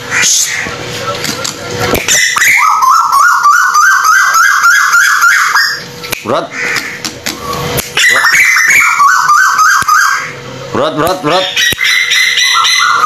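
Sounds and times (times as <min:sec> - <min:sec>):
bird calling in rising notes: 0:02.1 - 0:05.9, 0:07.4 - 0:10.4, 0:11.4 - 0:13.0.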